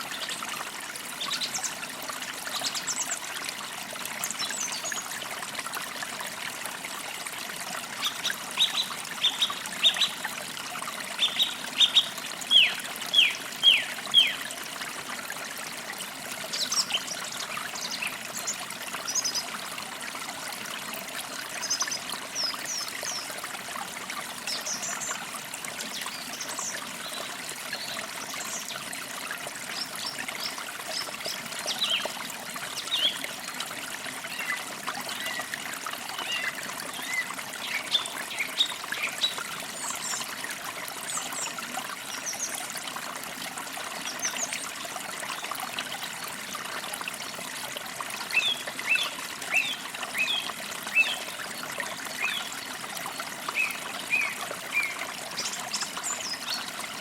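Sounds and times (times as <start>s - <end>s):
creek trickling: 0.0s - 57.0s.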